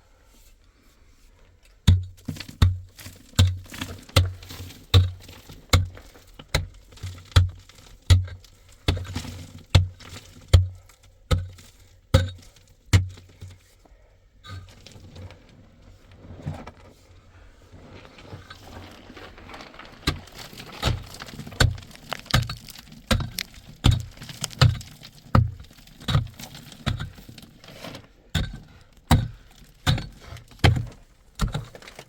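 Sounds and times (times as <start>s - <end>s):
scraping and shuffling: 14.6s - 32.0s.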